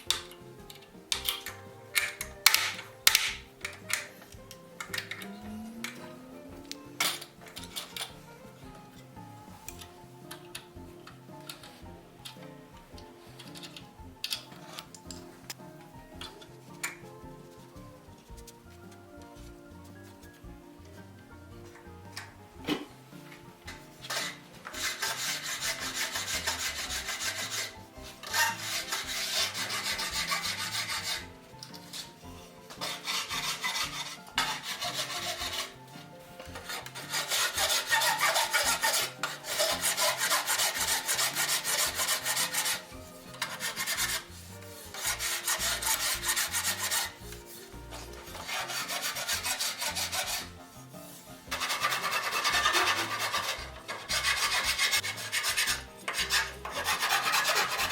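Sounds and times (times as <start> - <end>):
hand rasp filing wood: 0.0 - 8.7, 23.7 - 57.9.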